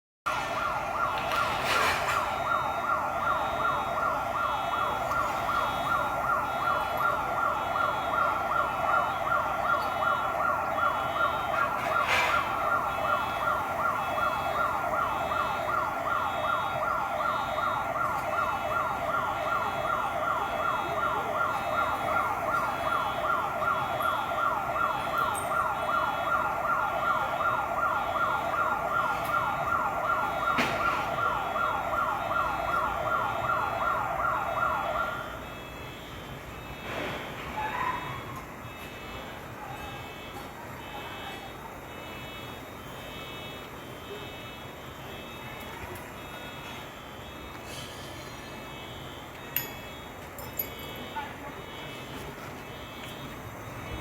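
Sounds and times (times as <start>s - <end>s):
emergency siren yelping: 0.3s - 54.0s.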